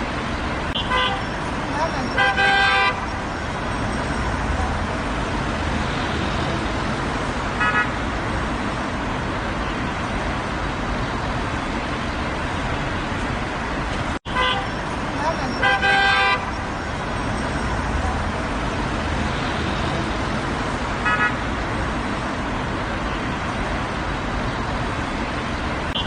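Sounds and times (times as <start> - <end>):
busy road traffic: 0.0 - 26.0
car horn toot: 0.8 - 1.3, 2.0 - 3.1, 7.6 - 8.0, 14.3 - 14.8, 15.5 - 16.6, 21.0 - 21.4.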